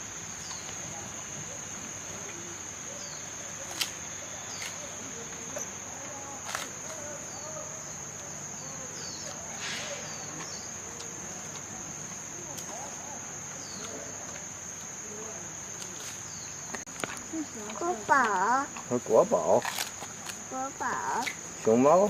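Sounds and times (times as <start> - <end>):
insects droning: 0.0 - 22.0
panda crunching bamboo: 19.6 - 20.4.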